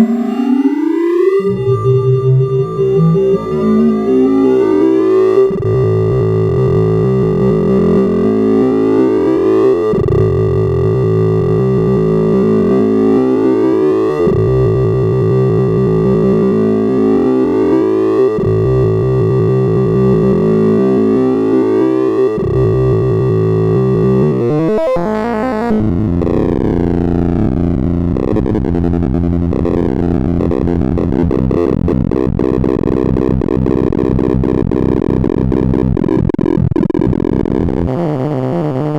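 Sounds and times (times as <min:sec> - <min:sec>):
fast pitch glide: 0:00.0 - 0:05.8
computer-generated tones: 0:00.0 - 0:25.4.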